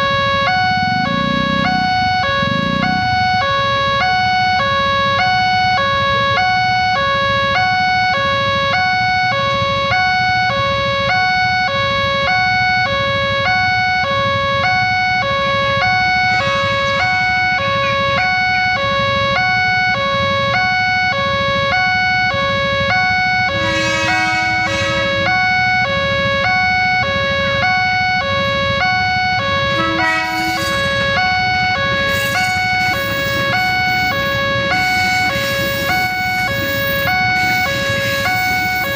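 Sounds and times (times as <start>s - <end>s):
horn blasts: 0.0s - 38.9s
level crossing warning siren: 0.0s - 38.9s
low traffic rumble: 0.0s - 38.9s.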